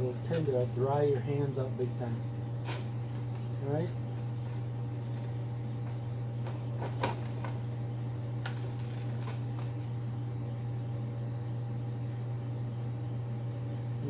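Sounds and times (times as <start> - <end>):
low machine hum: 0.0 - 14.0.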